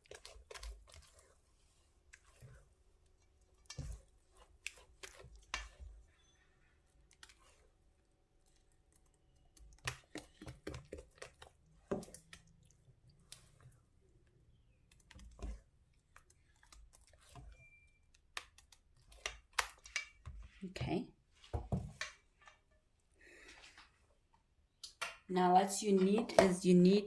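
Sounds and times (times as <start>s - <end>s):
kitchen utensils clicking and tapping: 24.8s - 26.9s.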